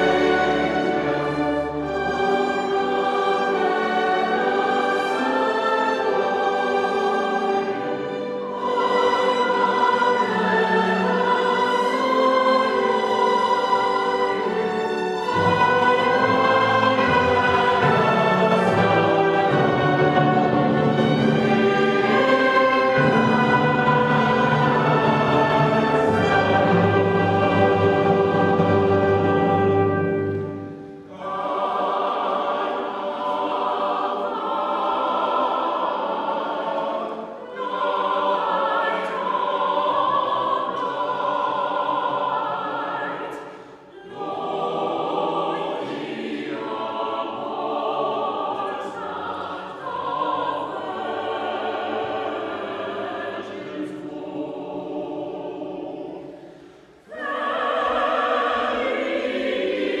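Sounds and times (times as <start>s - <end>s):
choir singing sacred music: 0.0s - 60.0s.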